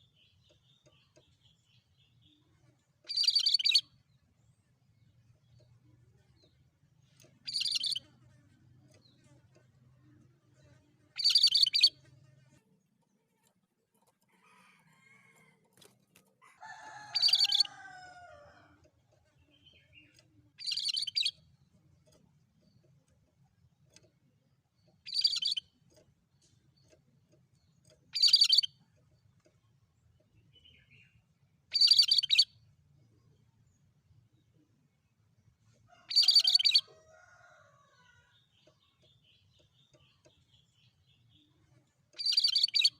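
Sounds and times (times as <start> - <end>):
songbird high-pitched bursts: 7.5 - 8.0, 11.2 - 11.9, 20.6 - 21.3, 25.1 - 25.7, 28.2 - 28.7, 31.8 - 32.5, 42.2 - 42.9.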